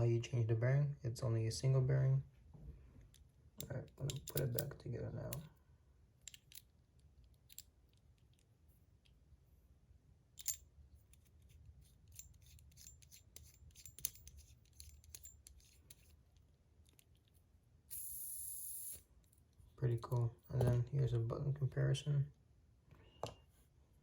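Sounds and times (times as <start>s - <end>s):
metal parts clicking and tapping: 3.1s - 5.5s, 6.2s - 9.2s, 10.4s - 18.2s.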